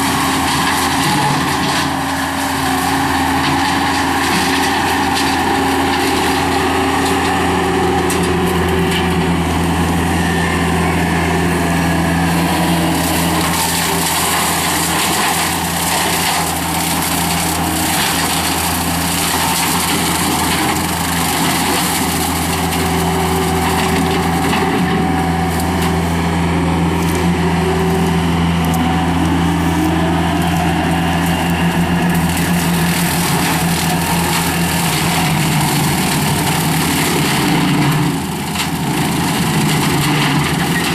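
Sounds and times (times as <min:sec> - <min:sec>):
brush cutter mower din: 0:00.0 - 0:40.9
diesel engine running under load: 0:00.0 - 0:40.9.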